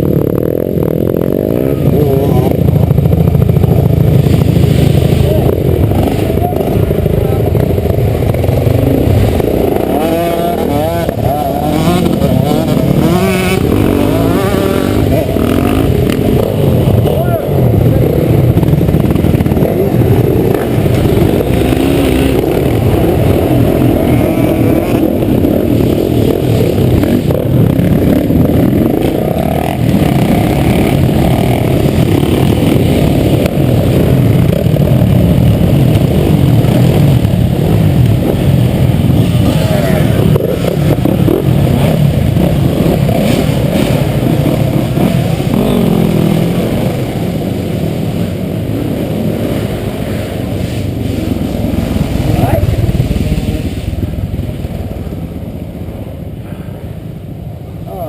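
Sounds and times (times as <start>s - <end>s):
motocross bike engine revving: 0.0s - 56.1s.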